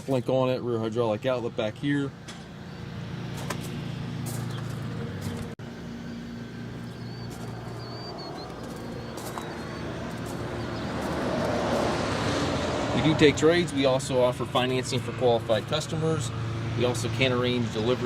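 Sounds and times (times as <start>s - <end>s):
tractor diesel engine idling: 4.2s - 11.2s, 13.3s - 18.0s
birds chirping faintly: 4.3s - 11.7s.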